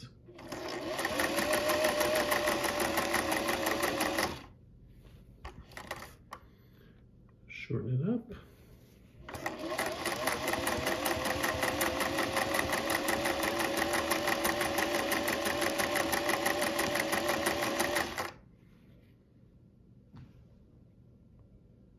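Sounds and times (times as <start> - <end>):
sewing machine running fast: 0.3 - 4.5, 9.3 - 18.4.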